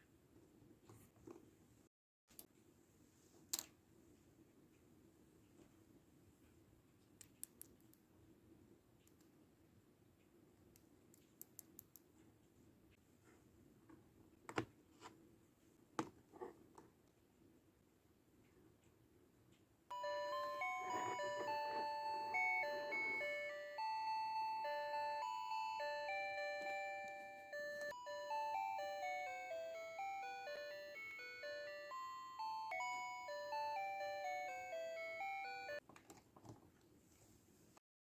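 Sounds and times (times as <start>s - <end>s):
electronic toy jingle: 19.9s - 35.8s.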